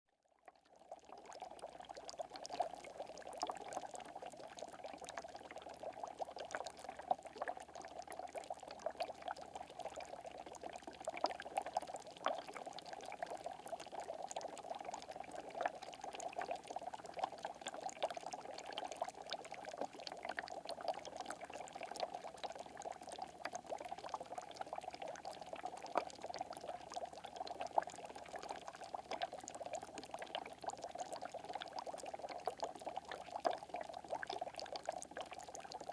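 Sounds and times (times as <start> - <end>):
water bubbling and fizzing: 1.0 - 35.9.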